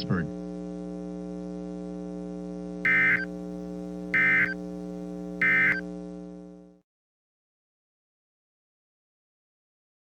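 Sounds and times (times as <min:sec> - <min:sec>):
electrical hum: 0:00.0 - 0:06.8.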